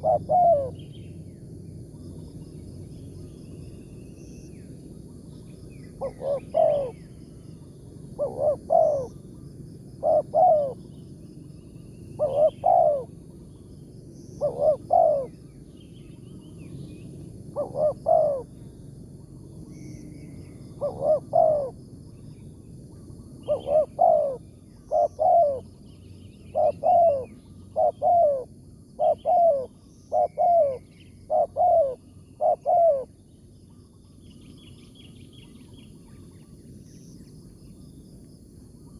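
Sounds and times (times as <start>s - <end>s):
dove cooing: 0.0s - 0.8s, 6.0s - 7.1s, 8.2s - 9.3s, 10.0s - 10.8s, 12.2s - 13.2s, 14.4s - 15.4s, 17.5s - 18.6s, 20.8s - 21.8s, 23.4s - 25.7s, 26.4s - 33.2s.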